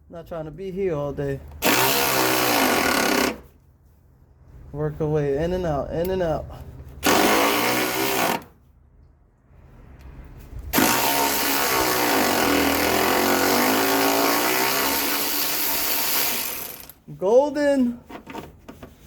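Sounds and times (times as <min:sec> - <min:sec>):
electric ratchet motor running: 0:10.8 - 0:17.0.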